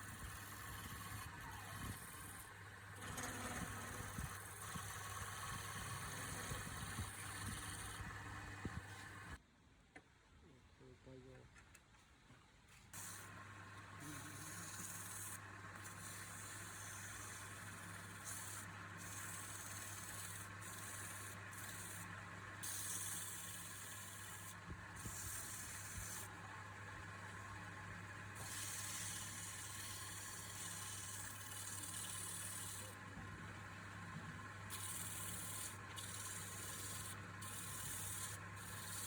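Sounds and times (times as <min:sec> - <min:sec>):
wood lathe motor hum: 0:00.0 - 0:09.4, 0:13.0 - 0:39.0
scraping against spinning wood: 0:00.1 - 0:09.3.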